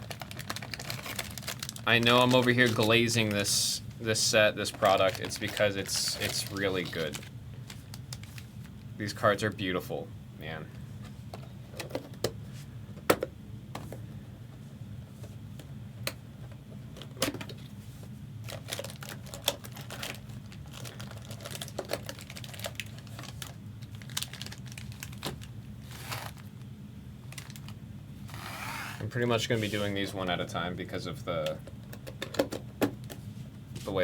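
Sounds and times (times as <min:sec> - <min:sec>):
plastic packs and cards handled: 0:00.0 - 0:09.7, 0:16.5 - 0:30.4, 0:31.0 - 0:34.0
steady low hum: 0:00.0 - 0:34.0.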